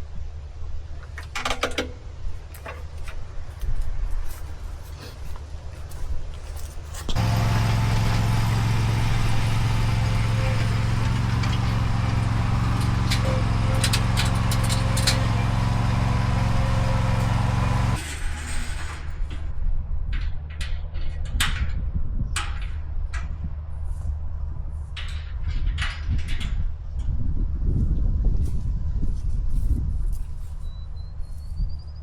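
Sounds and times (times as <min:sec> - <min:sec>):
mower engine running: 0:05.0 - 0:19.3
low rumble: 0:07.2 - 0:18.0.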